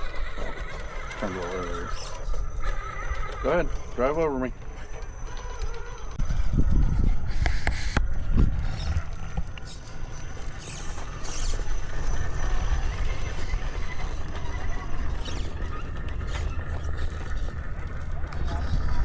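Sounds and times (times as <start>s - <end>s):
toy cars clacking on rocks: 0.0s - 19.0s
wind rumble on microphone: 5.6s - 19.0s.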